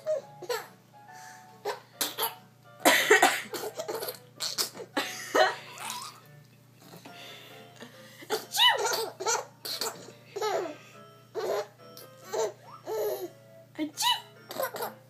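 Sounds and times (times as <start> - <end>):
girl coughing harshly: 2.0 - 3.8.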